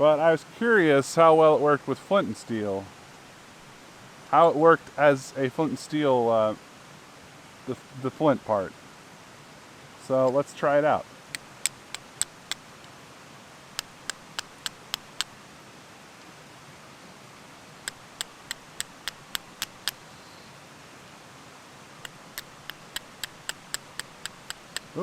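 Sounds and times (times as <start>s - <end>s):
stone striking steel clicks: 11.4s - 12.6s, 13.8s - 15.4s, 17.9s - 20.0s, 22.0s - 25.0s.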